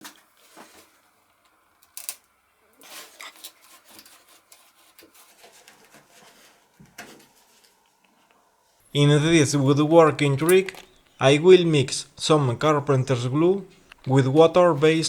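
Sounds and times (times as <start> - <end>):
light scraping and rubbing: 2.8 - 8.8.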